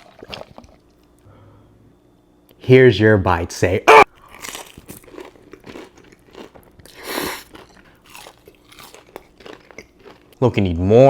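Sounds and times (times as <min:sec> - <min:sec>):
chewing crunchy fried food: 0:04.1 - 0:10.8.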